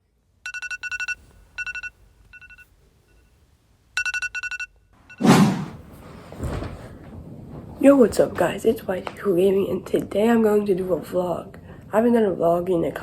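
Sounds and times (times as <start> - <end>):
electronic ringtone warbling beeps: 0.5 - 2.6, 4.0 - 5.2
loud rustling: 5.3 - 9.5.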